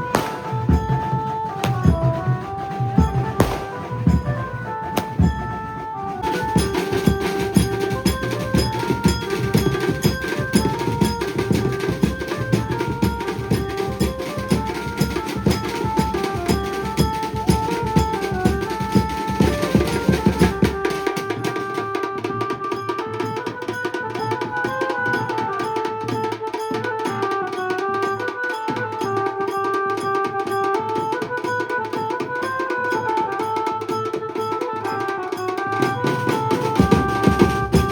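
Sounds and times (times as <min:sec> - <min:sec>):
heavy bass drum: 0:00.0 - 0:05.5
fast dense drumming: 0:00.0 - 0:21.4, 0:36.3 - 0:37.9
amplified band melody: 0:00.0 - 0:37.9.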